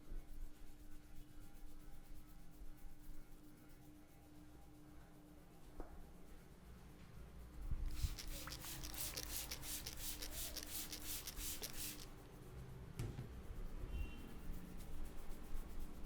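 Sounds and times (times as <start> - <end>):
hands rubbing hair: 7.9 - 12.1.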